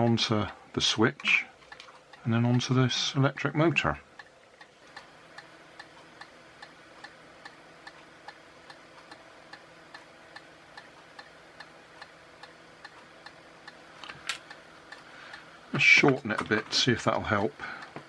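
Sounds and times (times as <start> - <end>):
faint steady hum: 0.0 - 18.0
regular light ticking: 0.0 - 18.0.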